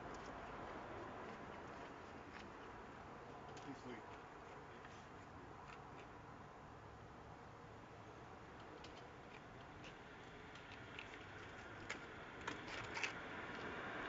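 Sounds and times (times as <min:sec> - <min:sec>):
small clicks and ticks: 0:08.5 - 0:13.8.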